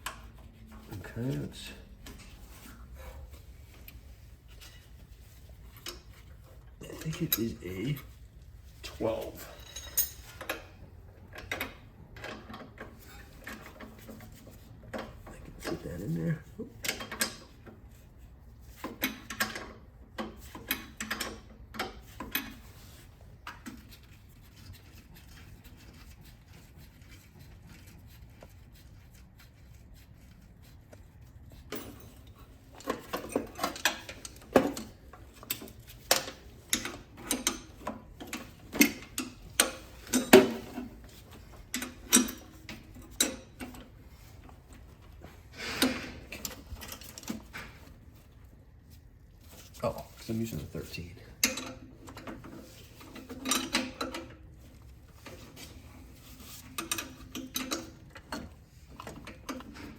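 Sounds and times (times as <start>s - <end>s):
wrench and metal parts clicking: 9.4s - 10.7s, 56.4s - 59.9s.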